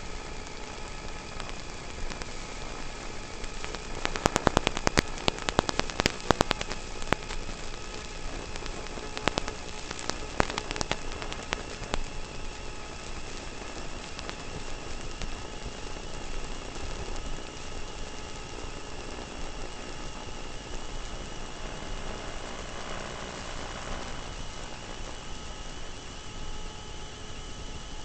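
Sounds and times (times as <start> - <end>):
loose stones clicking: 3.5 - 7.4.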